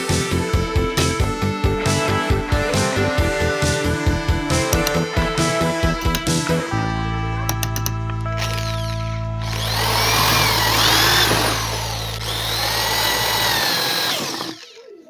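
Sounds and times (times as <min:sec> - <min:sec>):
background music: 0:00.0 - 0:14.4
power tool motor whine: 0:08.4 - 0:14.9.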